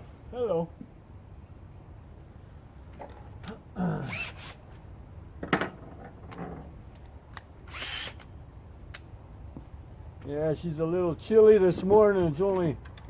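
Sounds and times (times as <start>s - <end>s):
cordless drill whirring: 7.7s - 8.2s.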